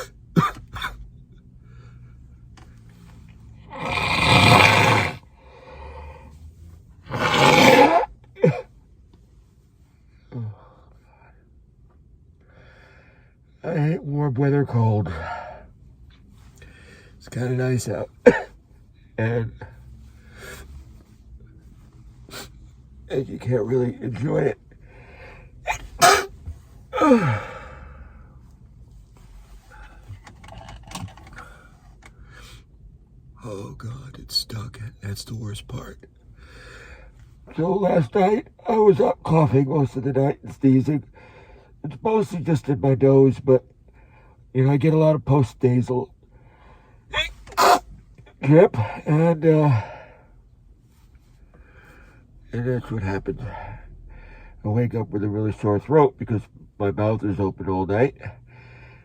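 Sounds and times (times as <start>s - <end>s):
man sighing: 26.9s - 28.0s
falling vocal grunt: 27.0s - 27.6s, 47.1s - 47.8s
man gasping breath: 27.0s - 28.4s, 58.4s - 59.0s.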